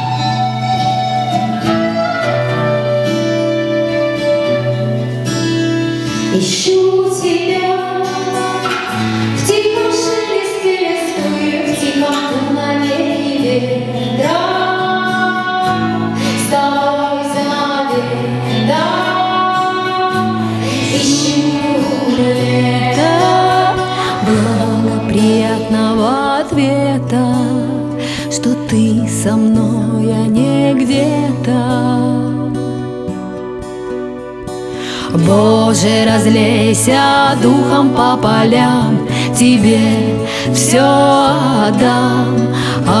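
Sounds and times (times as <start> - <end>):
person singing: 0.0 - 33.4, 34.6 - 43.0
gliding lead melody: 0.0 - 43.0
plucked guitar: 0.0 - 43.0.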